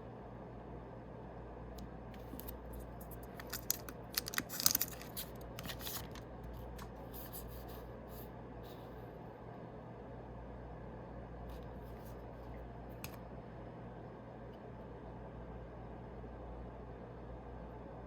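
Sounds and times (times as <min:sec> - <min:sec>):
steady low hum: 0:00.0 - 0:18.0
wrapper crinkling and cards handled: 0:02.2 - 0:07.0.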